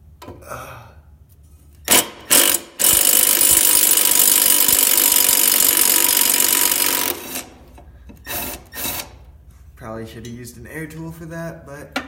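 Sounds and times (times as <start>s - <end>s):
impact wrench hammering: 1.9s - 9.2s.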